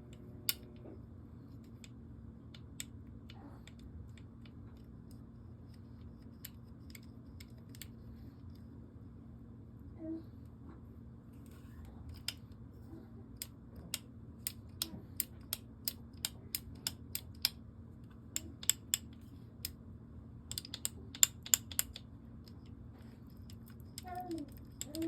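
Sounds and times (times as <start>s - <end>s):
trigger parts clicking: 13.4s - 17.6s, 18.3s - 19.8s, 20.5s - 22.7s.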